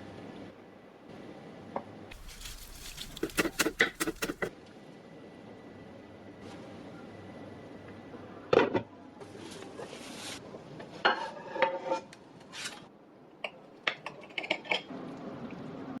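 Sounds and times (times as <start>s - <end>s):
scraping rub: 2.1s - 4.5s.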